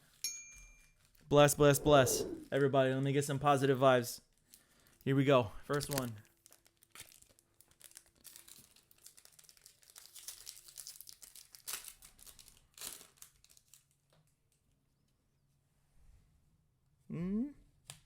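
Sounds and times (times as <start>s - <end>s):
foil wrapper crinkling and tearing: 5.7s - 14.3s.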